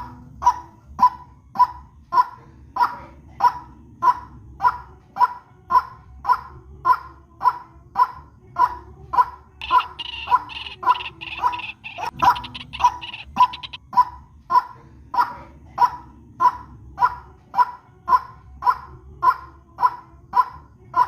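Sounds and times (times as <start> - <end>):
harsh bird call: 9.6 - 13.8
high rapid chattering: 9.6 - 13.8.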